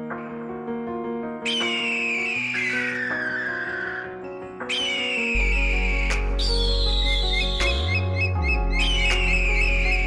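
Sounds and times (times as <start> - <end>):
background music with held chords: 0.0 - 10.0
deep bass note: 5.4 - 10.0.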